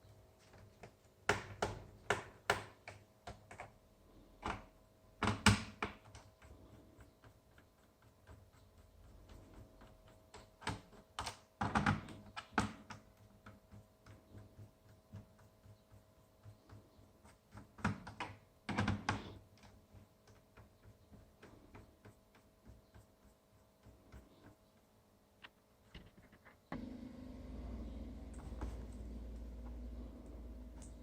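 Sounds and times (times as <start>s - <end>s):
typing on laptop keyboard: 0.5s - 25.0s.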